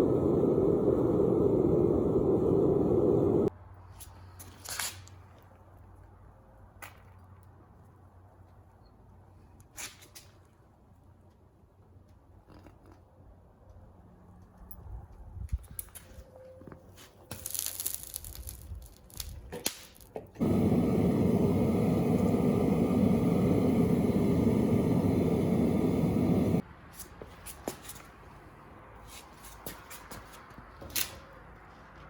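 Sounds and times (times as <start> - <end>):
loud steady rushing noise: 20.4 - 26.6.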